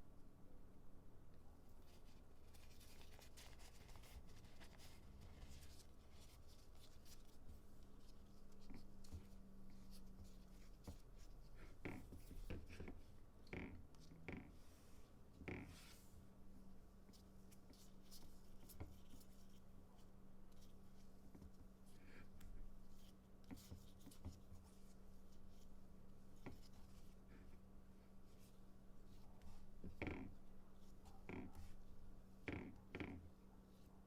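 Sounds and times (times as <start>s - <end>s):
hands rubbing and scratching phone: 1.8s - 16.1s, 17.1s - 25.7s.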